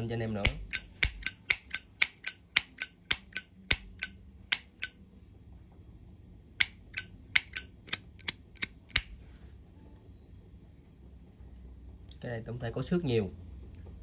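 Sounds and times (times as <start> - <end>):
lighter lid clicking open and shut: 0.5 - 4.7, 7.4 - 9.2.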